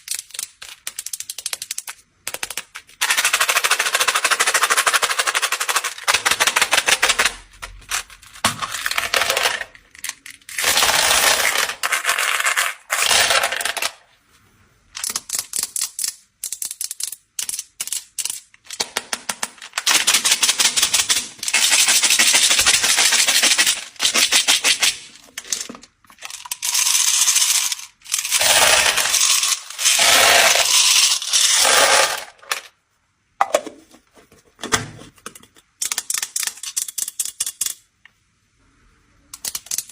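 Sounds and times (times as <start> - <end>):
hard candies clattering: 21.5 - 32.7.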